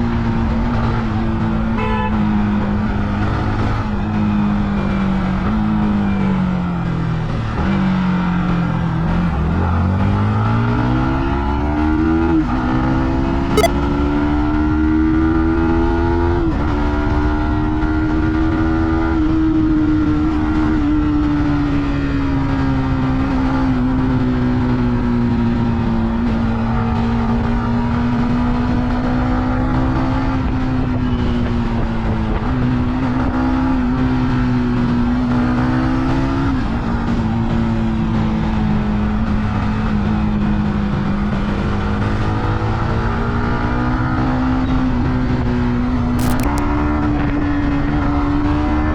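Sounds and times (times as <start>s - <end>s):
motorcycle engine and exhaust: 0.0s - 48.9s
sharp click: 46.2s - 46.7s.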